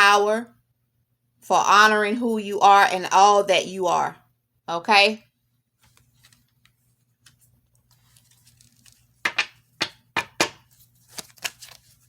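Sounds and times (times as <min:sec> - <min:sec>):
cards rustling and clicking: 0:05.8 - 0:12.0
sharp card snaps: 0:10.4 - 0:11.9.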